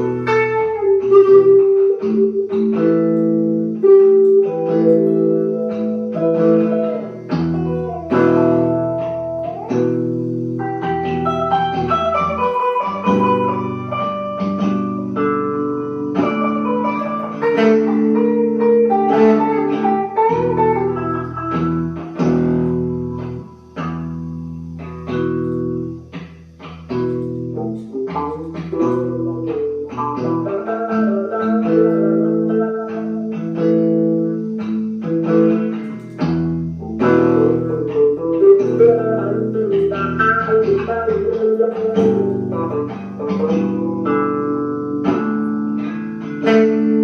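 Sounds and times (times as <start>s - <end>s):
plucked guitar notes: 0.0s - 47.0s.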